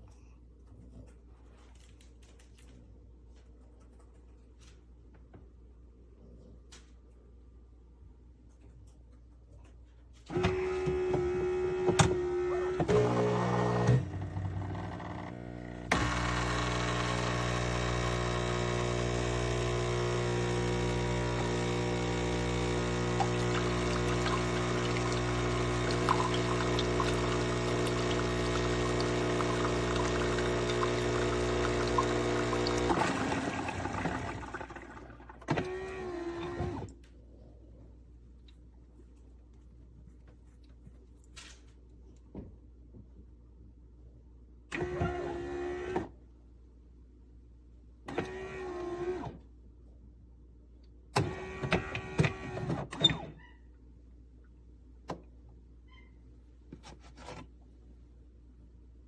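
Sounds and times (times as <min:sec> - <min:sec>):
espresso machine pump humming: 0:10.5 - 0:34.9.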